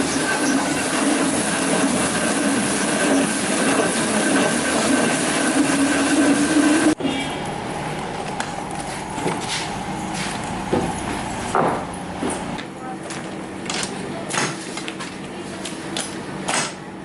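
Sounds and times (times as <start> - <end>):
sawmill machinery running: 0.0 - 7.0, 7.6 - 14.1
high machine whine: 0.0 - 12.6.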